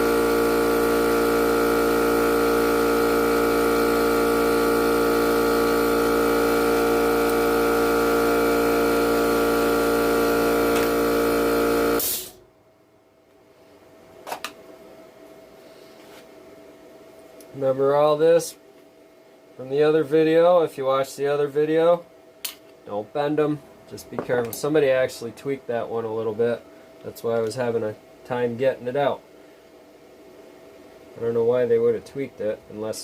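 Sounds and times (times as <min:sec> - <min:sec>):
small electric motor whining: 0:00.0 - 0:12.0.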